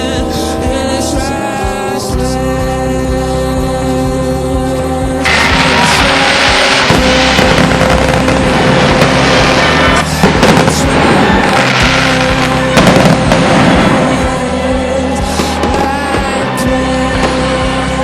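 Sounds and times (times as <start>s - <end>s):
music with sustained tones: 0.0s - 18.0s
sharp cracks: 5.2s - 14.4s
reversed fireworks crackling and blasts: 5.2s - 18.0s.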